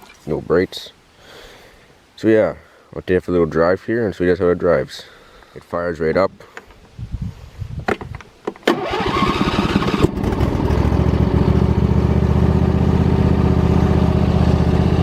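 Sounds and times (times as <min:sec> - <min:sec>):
lawn tractor engine starting and idling: 0:08.6 - 0:15.0.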